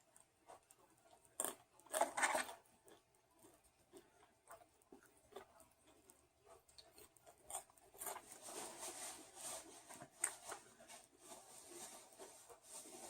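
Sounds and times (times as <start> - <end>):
chewing: 0.0 - 8.8, 9.6 - 10.8.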